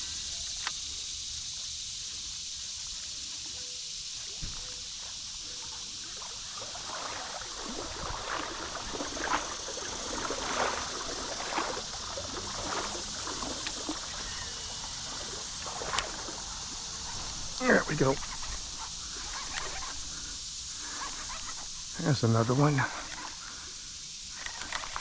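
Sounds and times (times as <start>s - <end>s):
water splashes and gurgles: 4.2s - 25.0s
creek water rushing: 5.2s - 25.0s.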